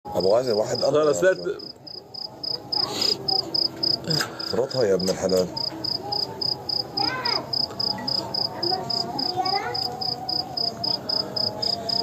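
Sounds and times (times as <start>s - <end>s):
cricket chirping: 0.2s - 12.0s
faint voices: 0.3s - 12.0s.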